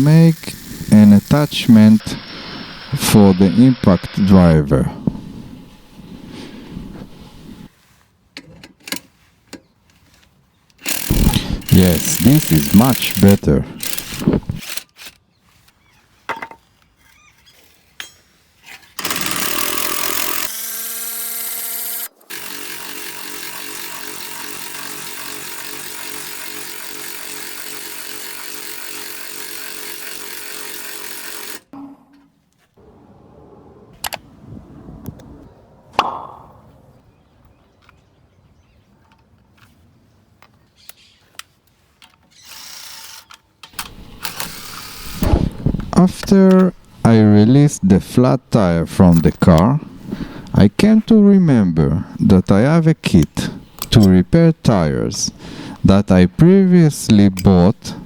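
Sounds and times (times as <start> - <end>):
impact driver running: 0.0 - 3.0, 10.8 - 14.8, 19.0 - 31.7, 42.5 - 47.1
knocks and clanks: 43.8 - 46.0.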